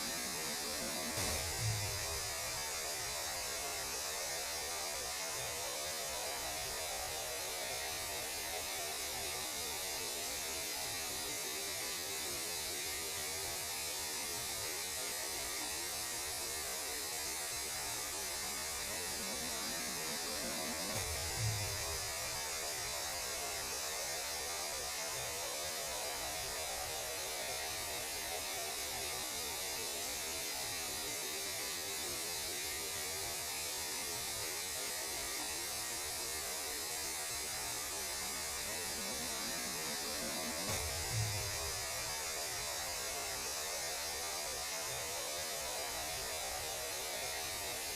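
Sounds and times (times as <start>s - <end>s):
electronic hum: 0.0s - 4.4s, 19.0s - 22.6s, 38.4s - 42.4s
static hiss: 0.0s - 47.9s.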